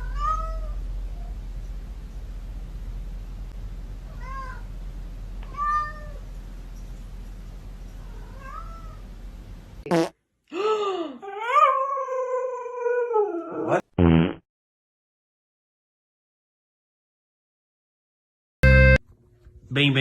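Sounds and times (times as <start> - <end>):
steady low hum: 0.0 - 9.9
cat meowing: 4.1 - 4.7, 5.5 - 6.2, 8.0 - 9.0.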